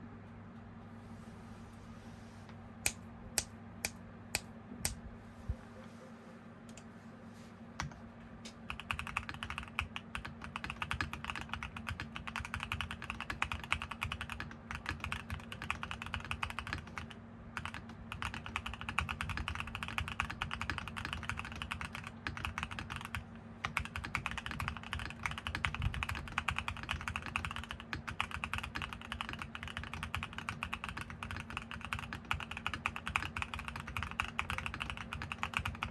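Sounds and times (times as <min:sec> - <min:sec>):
typing on mechanical keyboard: 0:08.7 - 0:35.9.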